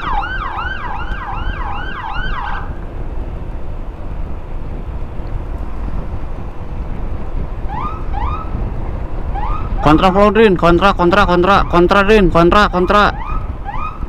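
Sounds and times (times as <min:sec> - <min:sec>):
electronic siren yelping: 0:00.0 - 0:02.8, 0:07.7 - 0:08.5, 0:09.3 - 0:09.9, 0:12.9 - 0:14.0
wind and motorcycle road noise: 0:00.0 - 0:14.0.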